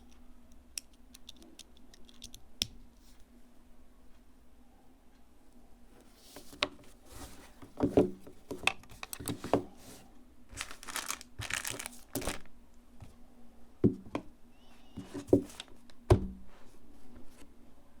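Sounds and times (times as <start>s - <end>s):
packaging crinkling and rustling: 10.5s - 12.5s.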